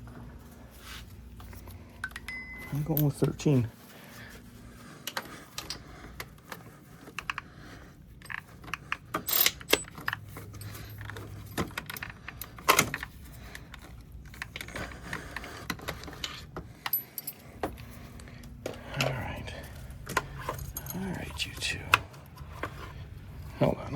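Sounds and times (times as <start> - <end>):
metal tools clinking: 2.0 - 3.6, 8.2 - 13.1, 15.9 - 22.8.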